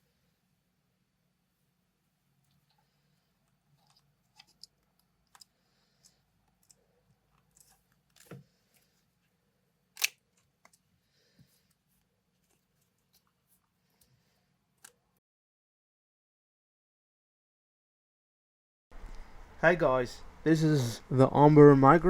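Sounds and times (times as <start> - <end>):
plastic and metal handling clicks: 10.0 - 10.8.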